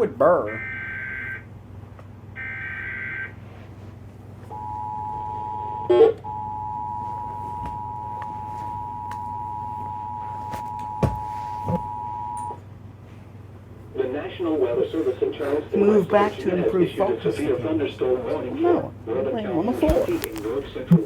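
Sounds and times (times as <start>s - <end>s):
low steady hum: 0.0s - 21.0s
steady two-tone attention signal: 4.5s - 10.3s.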